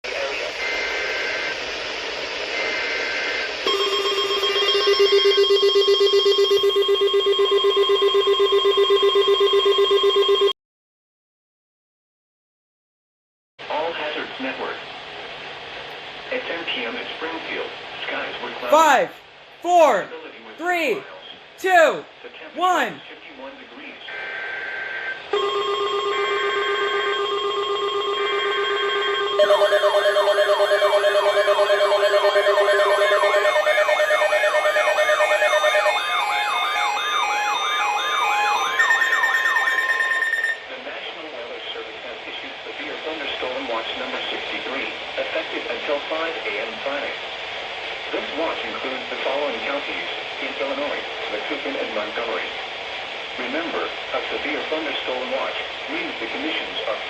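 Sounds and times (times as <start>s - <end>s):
steady alarm tone: 3.7s - 10.5s, 25.4s - 40.6s
warbling siren alarm: 3.7s - 10.5s, 25.5s - 40.6s.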